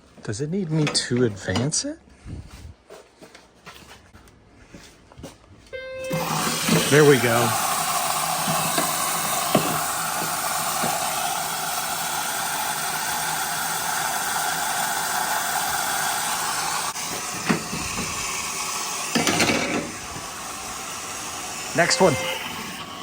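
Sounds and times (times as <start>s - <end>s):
water hissing into washer: 6.1s - 23.0s.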